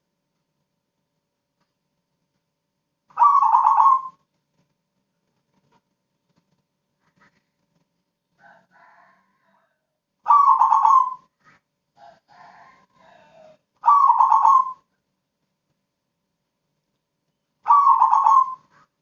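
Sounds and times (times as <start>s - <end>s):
dove cooing: 3.1s - 4.2s, 10.3s - 11.3s, 12.1s - 14.9s, 17.6s - 18.9s.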